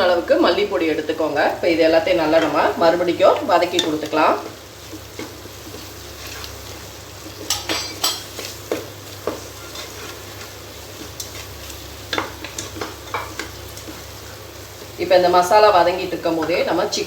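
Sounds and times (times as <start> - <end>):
low sizzle of frying: 0.0 - 17.0
spoon scraping and knocking pot: 7.4 - 10.2.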